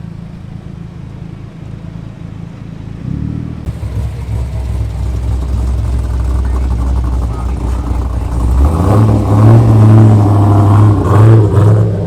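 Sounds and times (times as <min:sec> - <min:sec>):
car engine running: 0:03.7 - 0:12.0.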